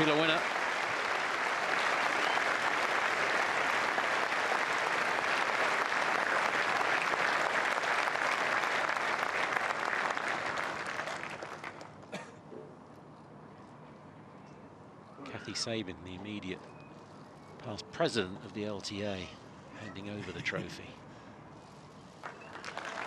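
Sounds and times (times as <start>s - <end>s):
crowd applauding: 0.0s - 12.0s, 22.2s - 23.0s.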